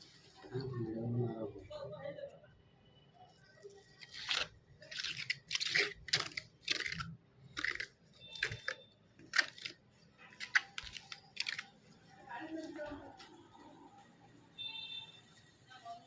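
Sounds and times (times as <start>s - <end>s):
crunchy scraping strokes: 4.0s - 11.7s.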